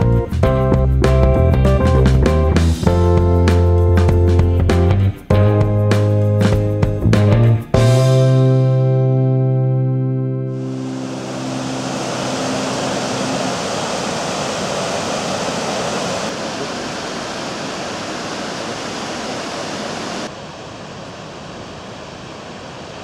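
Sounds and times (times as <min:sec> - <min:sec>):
musical chord: 0:07.8 - 0:14.4
waterfall rushing: 0:10.6 - 0:23.0.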